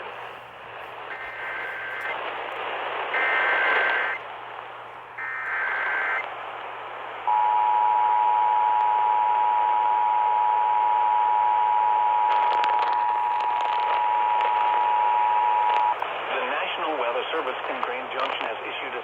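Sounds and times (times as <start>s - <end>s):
radio hiss: 0.0s - 7.3s, 12.3s - 19.0s.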